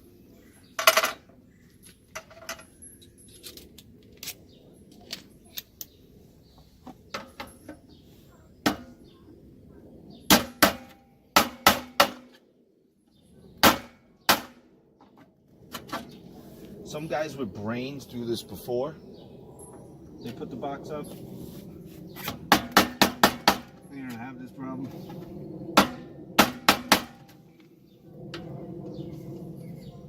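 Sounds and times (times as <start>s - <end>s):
hammer knocking on metal box: 22.5s - 23.7s, 25.8s - 27.2s.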